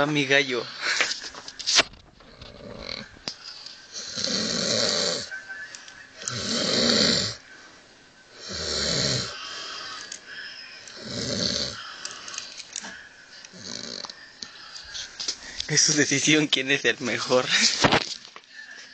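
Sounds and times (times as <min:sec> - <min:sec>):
man snoring: 0:02.3 - 0:03.1, 0:03.9 - 0:05.3, 0:06.2 - 0:07.4, 0:08.3 - 0:10.1, 0:10.9 - 0:12.3, 0:13.5 - 0:14.2.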